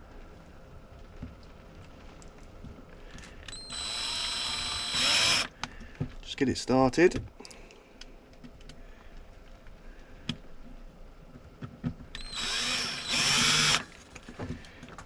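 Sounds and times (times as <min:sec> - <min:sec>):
drill driving a screw: 0:03.5 - 0:05.5, 0:12.2 - 0:13.9.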